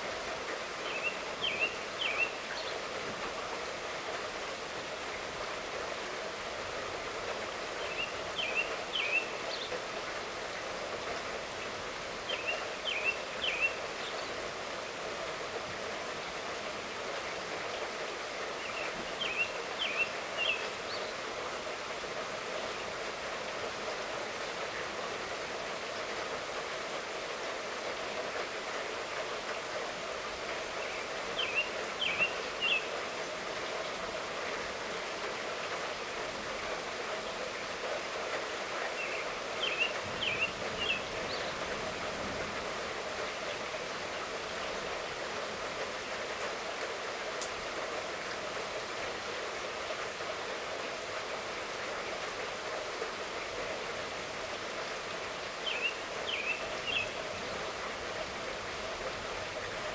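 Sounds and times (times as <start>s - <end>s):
light rain hissing: 0.0s - 59.9s
bird chirping: 30.8s - 32.9s, 39.0s - 41.5s, 55.6s - 57.2s.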